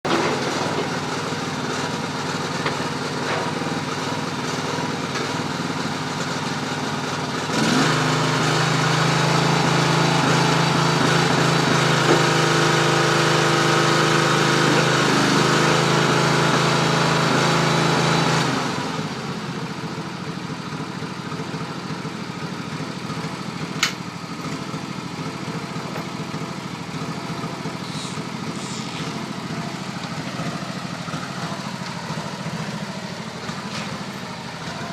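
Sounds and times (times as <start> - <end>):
recycling baler running: 0.0 - 34.9.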